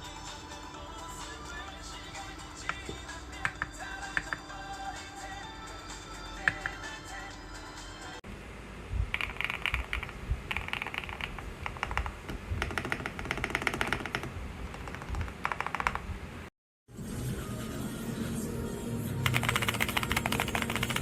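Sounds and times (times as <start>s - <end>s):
mechanical keyboard typing: 9.1s - 16.1s, 19.2s - 21.0s.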